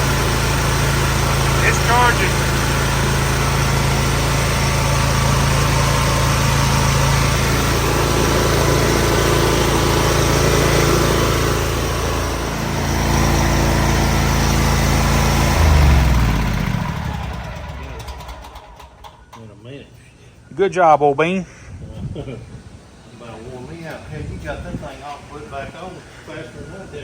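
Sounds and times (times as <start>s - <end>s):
mower engine running: 0.0s - 19.4s.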